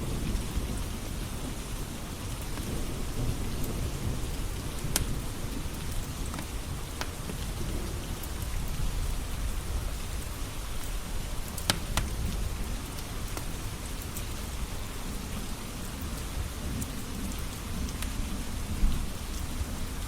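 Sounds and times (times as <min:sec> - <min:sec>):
steady rain: 0:00.0 - 0:20.0
wood fire crackling and popping: 0:02.4 - 0:02.8, 0:04.2 - 0:08.5, 0:10.8 - 0:14.4.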